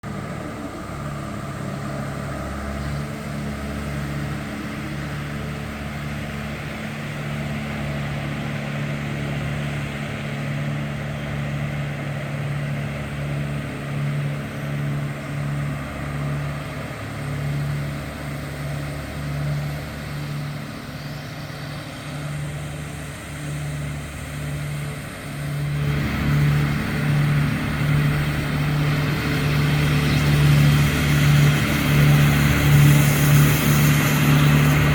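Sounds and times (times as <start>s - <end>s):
vehicle engine running: 0.0s - 34.9s.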